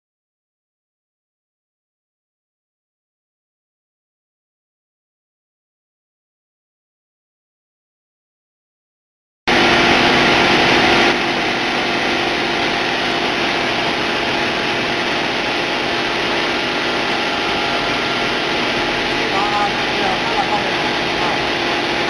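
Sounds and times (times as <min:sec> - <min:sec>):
wire saw cutting: 0:09.5 - 0:22.0.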